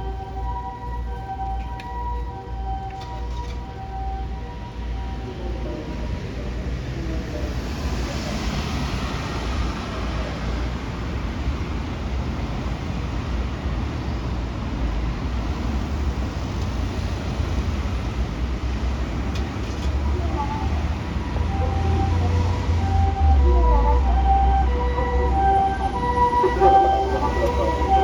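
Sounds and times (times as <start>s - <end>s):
hiss of tyres and traffic: 6.0s - 23.3s.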